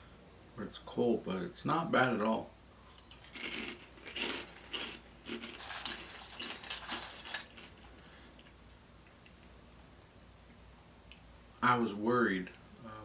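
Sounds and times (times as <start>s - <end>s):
pork rinds crackling and crunching: 2.8s - 8.5s.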